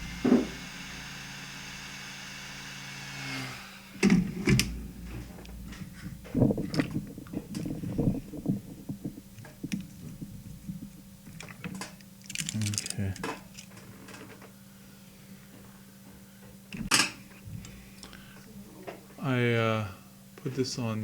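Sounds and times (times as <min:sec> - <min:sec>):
hot air station blowing with whine: 0:00.0 - 0:12.2.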